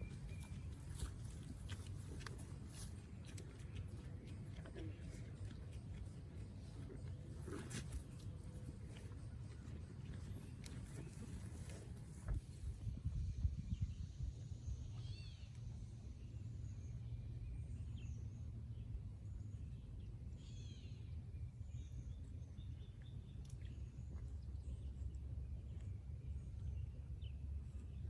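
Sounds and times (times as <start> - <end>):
steady low rumble: 0.0 - 20.2.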